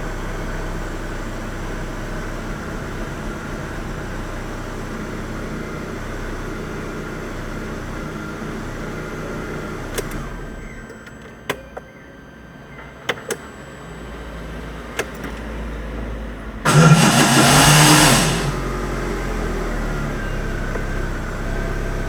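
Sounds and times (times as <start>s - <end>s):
car engine idling: 16.7s - 18.8s
starter motor grinding: 16.7s - 18.8s.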